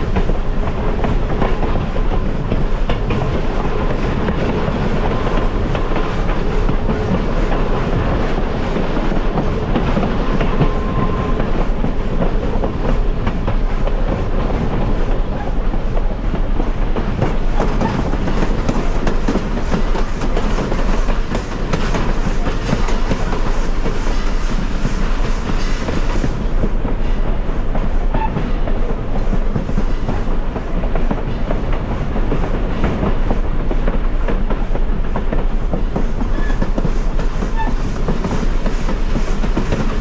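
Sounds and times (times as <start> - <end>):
train wheels rumbling on rail: 0.0 - 40.0.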